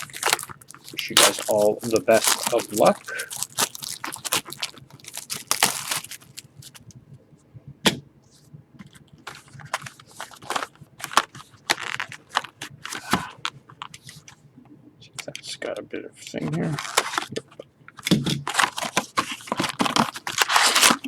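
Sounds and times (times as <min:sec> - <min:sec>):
plastic wrap and cardboard tearing: 0:00.0 - 0:06.8, 0:09.3 - 0:13.4, 0:18.2 - 0:21.0.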